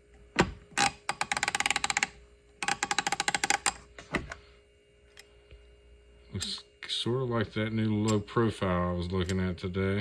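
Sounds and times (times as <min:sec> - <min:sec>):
ratchet wrench clicking: 0:00.8 - 0:03.8.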